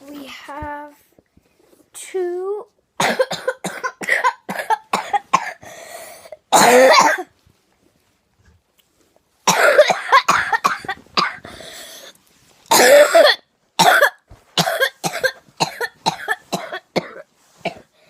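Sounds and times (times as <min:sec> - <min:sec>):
person coughing: 0:03.0 - 0:05.6, 0:06.5 - 0:07.3, 0:09.5 - 0:11.6, 0:12.7 - 0:17.9
rasping breath in: 0:05.6 - 0:06.4, 0:11.4 - 0:12.2.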